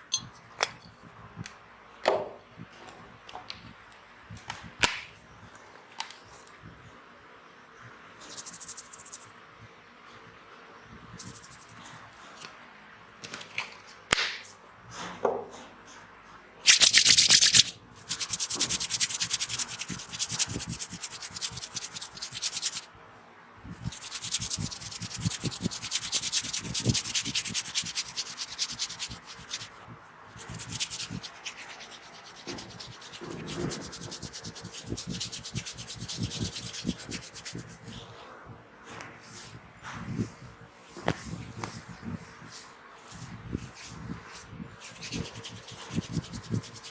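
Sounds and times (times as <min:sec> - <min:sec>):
hands rubbing hair: 0:08.2 - 0:09.3, 0:11.2 - 0:12.0, 0:16.7 - 0:22.9, 0:23.7 - 0:38.1, 0:40.9 - 0:46.9.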